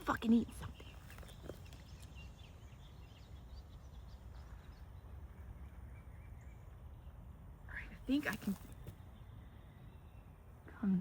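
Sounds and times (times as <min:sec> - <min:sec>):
distant birds chirping: 0:00.0 - 0:11.0
low rumble of wind: 0:00.0 - 0:11.0.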